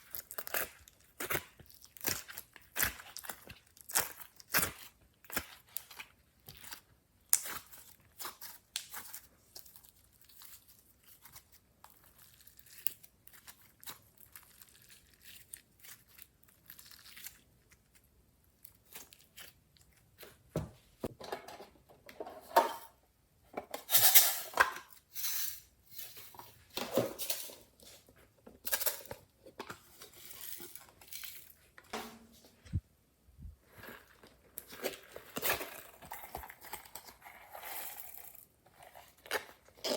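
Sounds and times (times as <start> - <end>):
slime squishing and crackling: 0.0 - 20.5.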